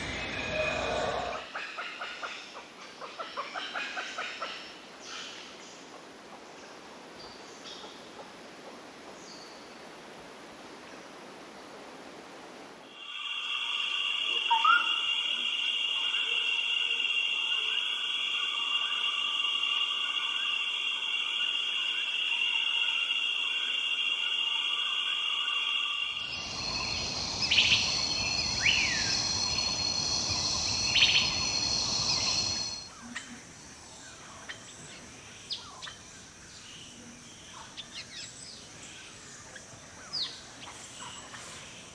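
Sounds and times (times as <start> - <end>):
high-pitched insect chorus: 0.0 - 1.6, 12.8 - 41.9
low rushing layer: 12.7 - 32.9
bird calls and chirps: 14.4 - 20.6, 26.2 - 33.3.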